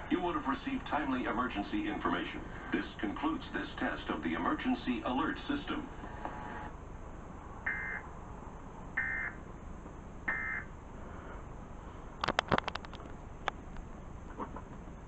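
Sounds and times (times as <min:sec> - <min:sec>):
radio hiss: 0:00.0 - 0:06.8.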